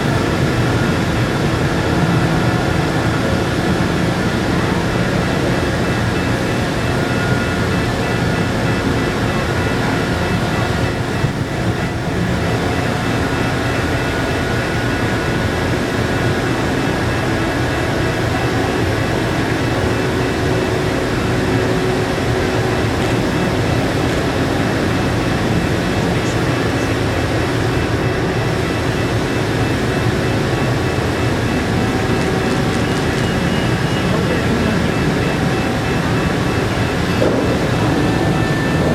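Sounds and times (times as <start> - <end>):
faint steady tones: 0.0 - 38.9
ferry engine drone: 0.0 - 38.9.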